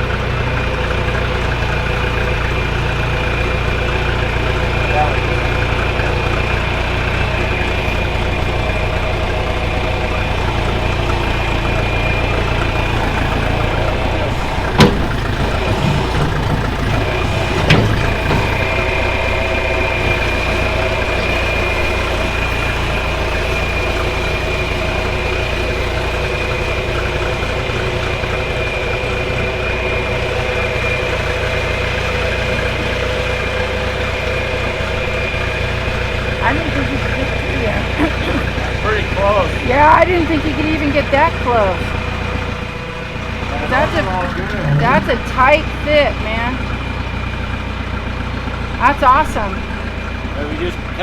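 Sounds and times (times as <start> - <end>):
backhoe engine running: 0.0 - 51.0
sharp knocks: 13.1 - 19.4.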